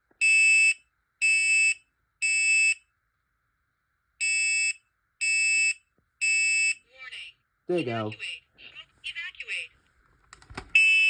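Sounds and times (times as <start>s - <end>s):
smoke alarm beeping: 0.2s - 2.8s, 4.2s - 6.8s, 10.7s - 11.0s.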